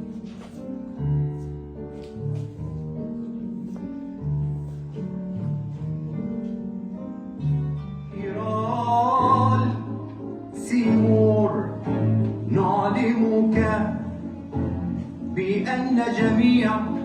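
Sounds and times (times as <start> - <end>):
person singing: 8.1 - 17.0.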